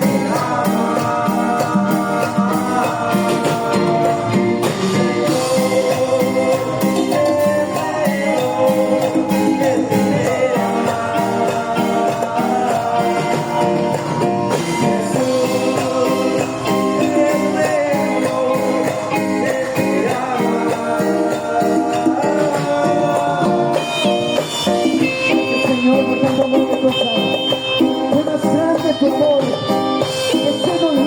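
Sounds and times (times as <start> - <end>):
live band playing upbeat song: 0.0 - 31.0
steady percussion beat: 0.0 - 31.0.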